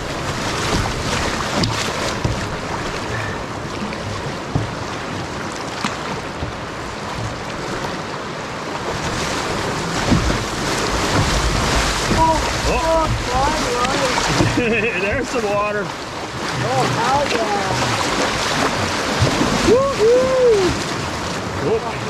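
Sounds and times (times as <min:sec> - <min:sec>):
sharp knocks: 0:00.0 - 0:03.3, 0:08.9 - 0:13.7
river rapids splashing: 0:00.0 - 0:22.0.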